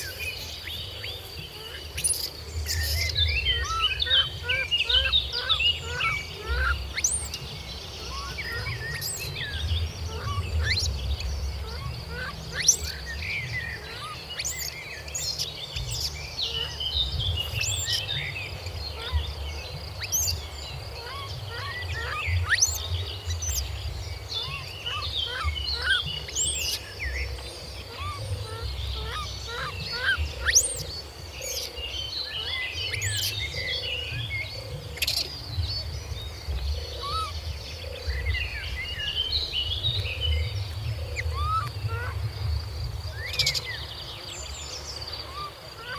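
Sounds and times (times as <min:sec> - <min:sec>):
birds chirping and whistling: 0:00.0 - 0:45.9
insect drone: 0:00.0 - 0:45.9
low rumble: 0:33.4 - 0:44.9.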